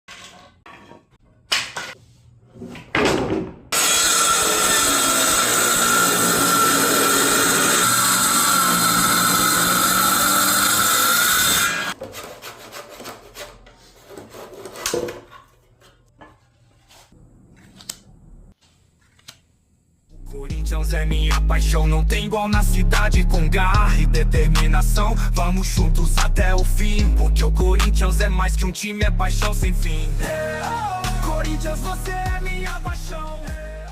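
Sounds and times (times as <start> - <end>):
wood knocking and clattering: 2.8 - 3.6
power tool whining on wood: 3.8 - 12.0.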